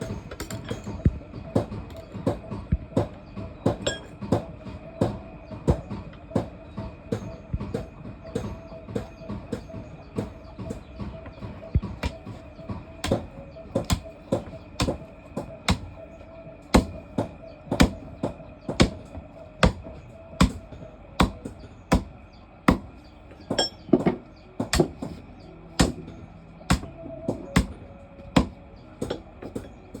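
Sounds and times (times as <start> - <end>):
hammer striking iron bar: 15.7 - 15.9, 24.7 - 25.1.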